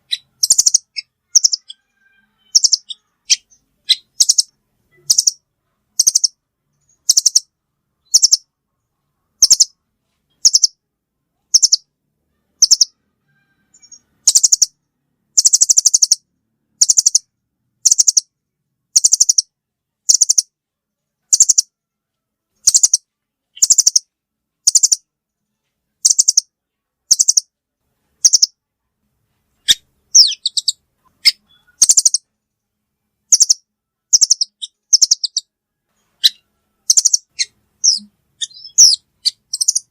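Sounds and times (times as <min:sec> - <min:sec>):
bird chattering calls: 0:00.0 - 0:01.8, 0:02.5 - 0:05.4, 0:12.6 - 0:12.9, 0:23.6 - 0:24.0, 0:24.7 - 0:25.0, 0:29.7 - 0:32.2, 0:33.3 - 0:35.4, 0:36.2 - 0:39.9.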